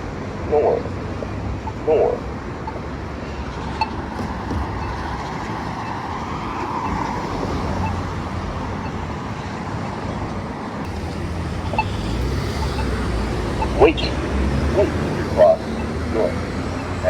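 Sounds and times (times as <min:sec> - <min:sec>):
pedestrian button ticking: 0:00.0 - 0:17.0
road traffic: 0:00.0 - 0:17.0
vehicle passing: 0:00.0 - 0:17.0.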